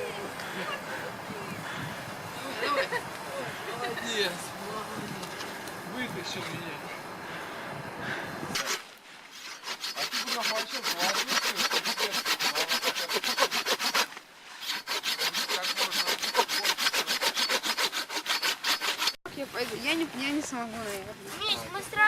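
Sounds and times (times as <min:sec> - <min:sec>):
hand saw cutting wood: 0:08.5 - 0:19.2.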